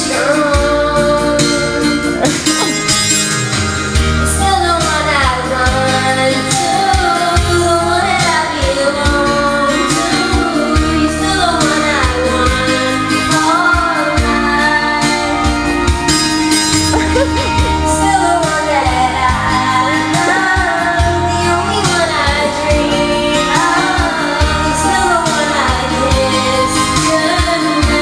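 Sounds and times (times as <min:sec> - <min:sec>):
person singing: 0:00.0 - 0:03.0, 0:16.8 - 0:28.0
backing track with heavy bass: 0:00.0 - 0:28.0.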